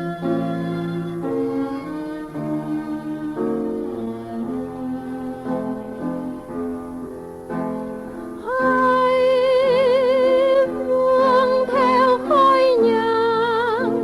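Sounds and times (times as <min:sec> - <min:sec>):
woman singing with vibrato: 0:00.0 - 0:03.4, 0:08.4 - 0:14.0
soft piano chords: 0:00.0 - 0:14.0.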